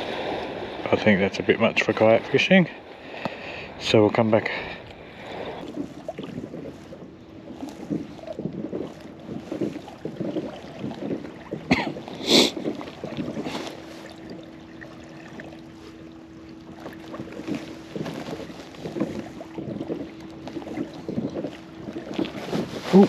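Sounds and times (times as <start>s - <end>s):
gusty wind: 0.0s - 16.2s
low steady hum: 0.0s - 23.0s
water slapping kayak hull: 0.0s - 23.0s
splash: 5.2s - 23.0s.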